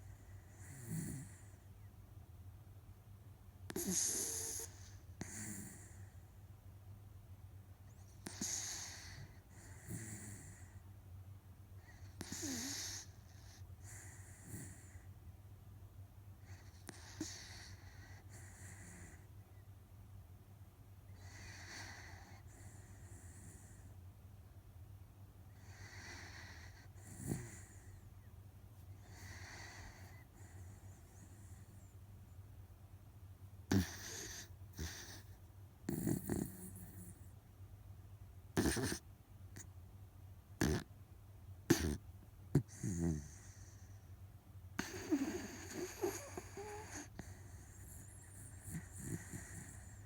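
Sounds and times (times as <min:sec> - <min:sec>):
dog snoring: 0:00.0 - 0:01.6, 0:03.7 - 0:06.3, 0:08.0 - 0:10.8, 0:11.8 - 0:15.1, 0:16.4 - 0:19.3, 0:21.2 - 0:23.9, 0:25.5 - 0:28.0, 0:29.0 - 0:31.9, 0:33.7 - 0:37.3, 0:38.5 - 0:39.7, 0:40.6 - 0:40.9, 0:41.6 - 0:44.0, 0:44.8 - 0:50.0.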